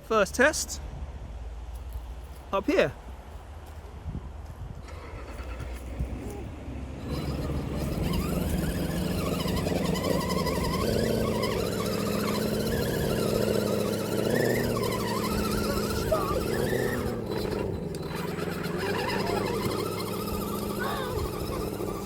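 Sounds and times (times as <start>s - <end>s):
electric motor and gears whining: 5.5s - 22.0s.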